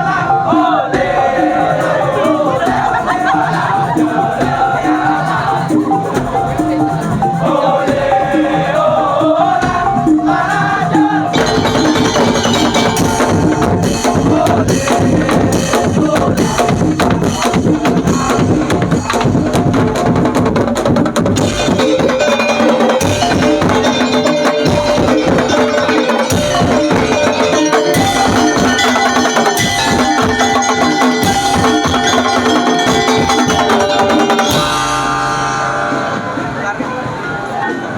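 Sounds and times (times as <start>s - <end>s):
percussion ensemble beating drums: 0.1s - 37.9s
melody with held tones: 11.1s - 20.1s, 21.4s - 37.9s.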